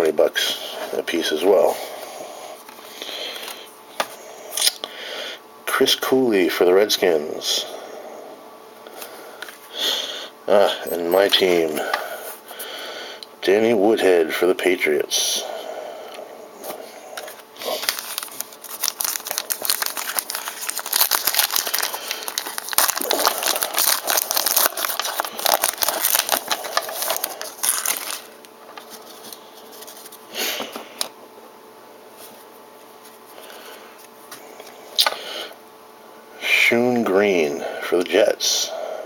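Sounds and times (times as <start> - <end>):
wrapper crinkling and tearing: 17.2 - 30.1.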